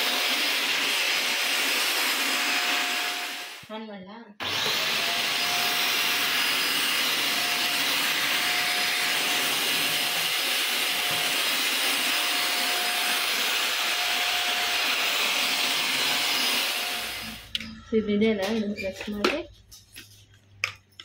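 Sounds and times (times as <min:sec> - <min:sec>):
vacuum cleaner running: 0:00.0 - 0:03.7, 0:04.4 - 0:17.6.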